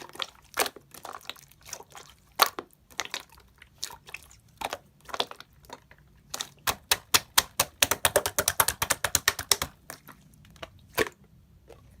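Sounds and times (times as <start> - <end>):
slime clicking and popping: 6.4 - 9.9.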